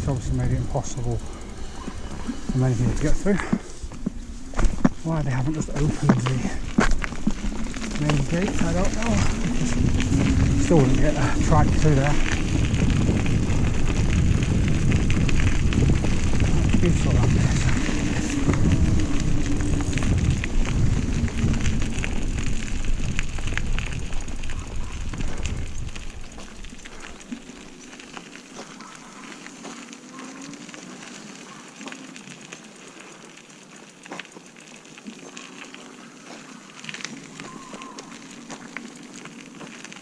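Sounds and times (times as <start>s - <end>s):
wind rumble on microphone: 0.0s - 29.9s
bicycle tyres crackling: 0.0s - 40.0s.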